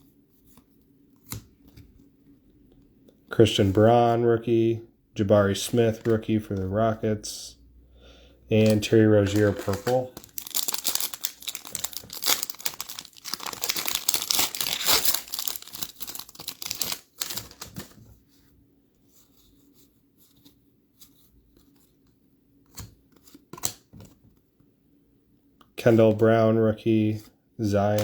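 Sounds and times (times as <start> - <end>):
foil wrapper tearing and crinkling: 8.6 - 18.0.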